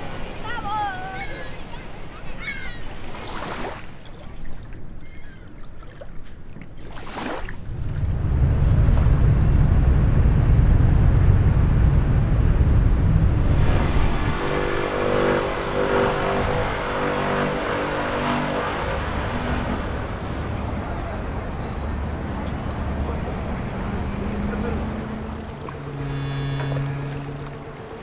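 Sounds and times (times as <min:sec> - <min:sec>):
traffic rumble: 0:07.5 - 0:28.0
street traffic: 0:07.6 - 0:28.0.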